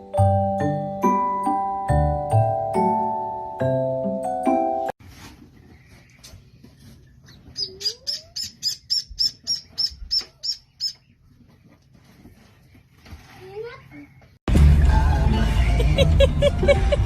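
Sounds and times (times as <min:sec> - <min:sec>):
small bird chirping: 0:05.7 - 0:11.2.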